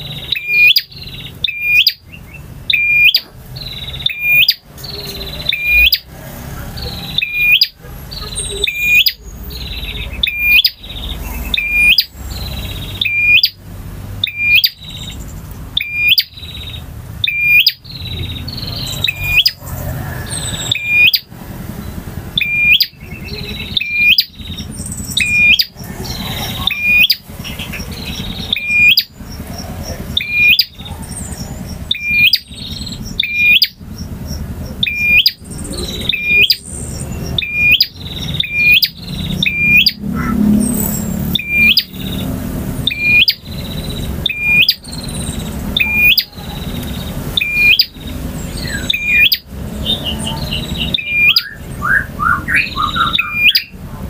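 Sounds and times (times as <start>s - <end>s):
bird chirping: 0.0s - 54.0s.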